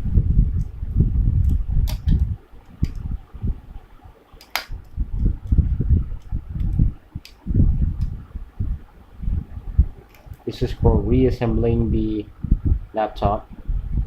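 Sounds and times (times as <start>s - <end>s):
laptop parts handling noise: 4.3s - 5.6s
sharp clicks: 4.4s - 5.6s.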